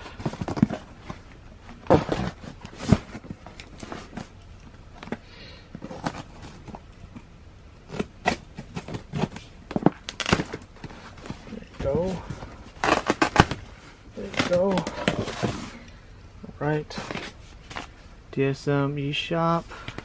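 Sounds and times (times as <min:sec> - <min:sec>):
packaging tearing and crackling: 0:07.8 - 0:15.7.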